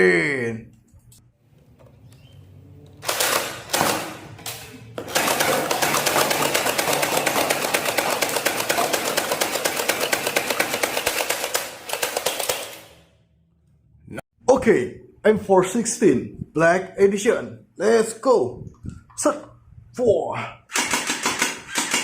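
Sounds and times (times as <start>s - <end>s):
toy machine gun firing: 3.0s - 4.2s, 5.0s - 13.1s, 20.7s - 22.0s.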